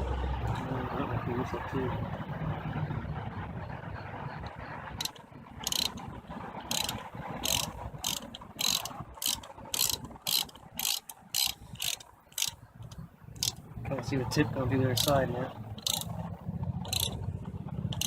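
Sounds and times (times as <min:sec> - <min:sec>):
wrench clicking and scraping: 0:05.0 - 0:06.1, 0:06.7 - 0:13.6, 0:14.9 - 0:16.2, 0:16.8 - 0:17.2.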